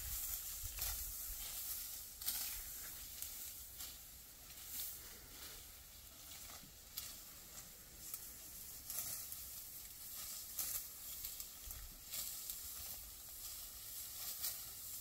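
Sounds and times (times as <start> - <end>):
dry wheat stalks rustling: 0.0 - 15.0.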